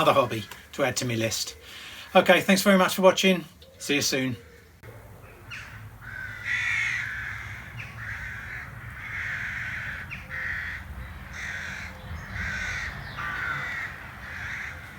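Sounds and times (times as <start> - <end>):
bird cawing: 3.6 - 14.9.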